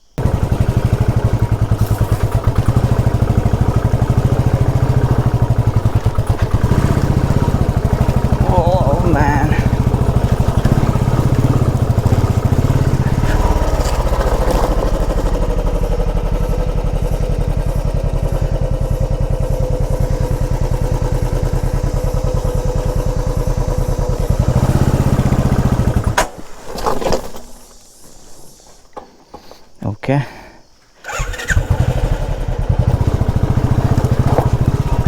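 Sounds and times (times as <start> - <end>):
motorcycle engine running: 0.1 - 26.2, 31.0 - 35.0.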